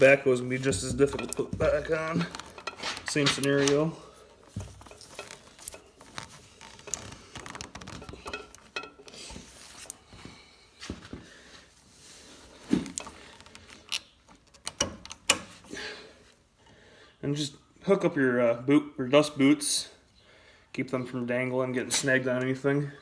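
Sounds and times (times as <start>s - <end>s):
metal couplers clicking and knocking: 0.7s - 3.9s, 6.7s - 9.2s, 13.8s - 15.5s.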